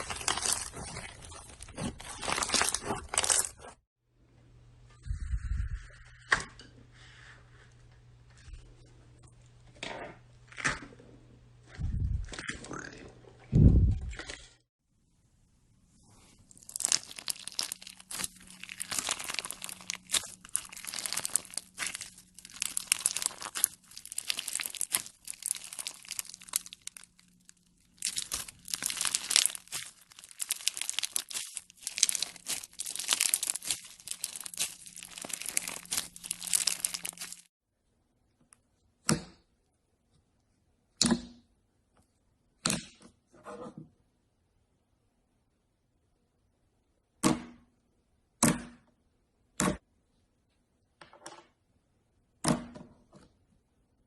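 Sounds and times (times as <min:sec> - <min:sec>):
slime crackling and crinkling: 0:00.0 - 0:03.8, 0:16.2 - 0:37.5
slime squishes: 0:16.3 - 0:37.5.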